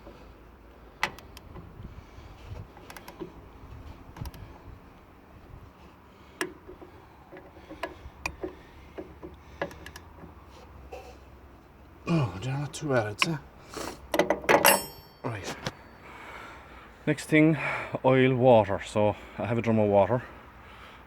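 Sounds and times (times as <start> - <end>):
light clicks and knocks: 6.4 - 10.4.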